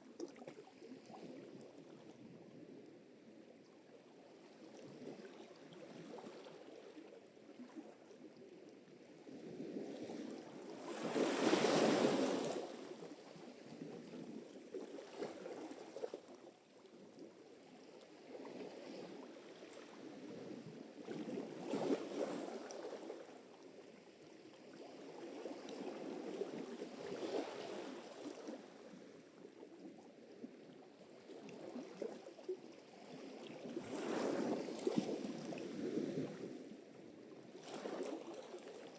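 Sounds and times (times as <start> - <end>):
waves breaking and washing in: 9.8 - 13.1, 33.2 - 38.6.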